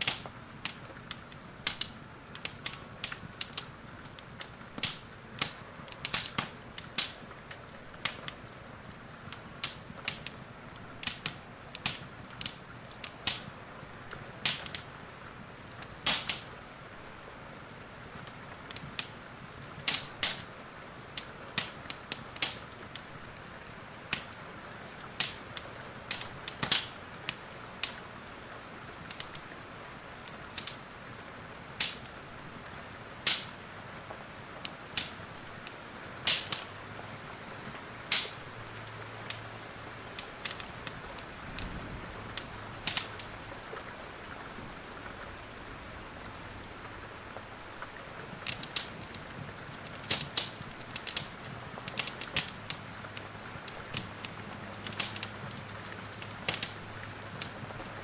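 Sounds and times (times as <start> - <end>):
rain falling: 0.0 - 58.0
wood fire crackling and popping: 0.0 - 58.0.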